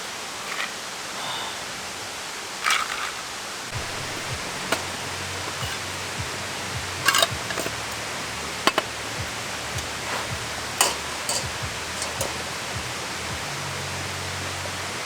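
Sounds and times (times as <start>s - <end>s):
wood fire hissing: 0.0s - 15.0s
fire pops and crackles: 3.7s - 13.5s.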